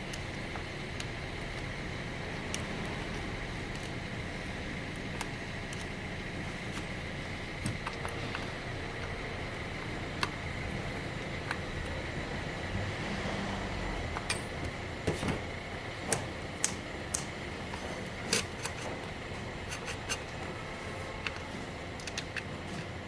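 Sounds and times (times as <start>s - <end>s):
tools clicking and knocking: 19.7s - 20.4s.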